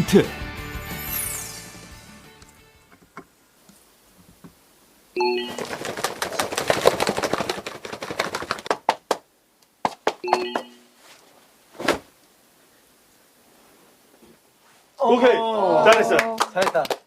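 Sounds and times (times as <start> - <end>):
clicking and rustling: 5.6 - 8.8.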